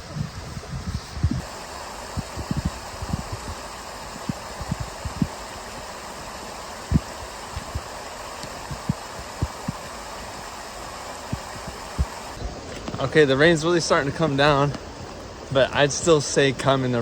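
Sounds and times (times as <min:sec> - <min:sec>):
low thumps on microphone: 0:00.0 - 0:01.5, 0:02.1 - 0:05.5, 0:06.9 - 0:10.0
rain falling through forest: 0:00.0 - 0:17.0.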